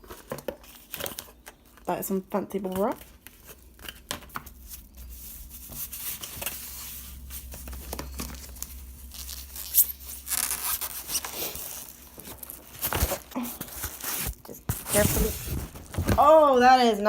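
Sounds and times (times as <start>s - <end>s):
bubble wrap crinkling: 0.0s - 17.0s
sharp crackles and clicks: 3.2s - 13.3s.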